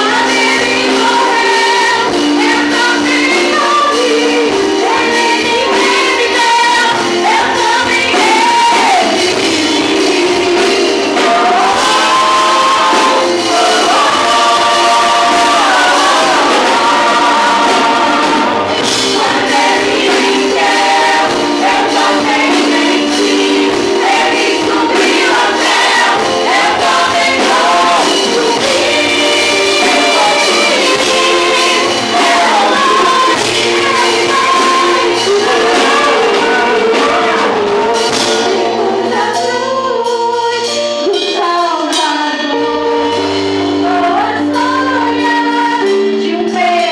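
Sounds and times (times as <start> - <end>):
group singing gospel song: 0.0 - 40.7, 41.9 - 46.9
instrumental backing: 0.0 - 46.9.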